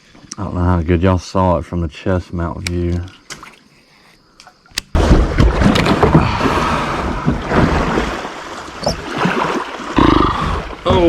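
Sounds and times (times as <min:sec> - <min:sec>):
water splashing and rushing: 0:04.8 - 0:11.0.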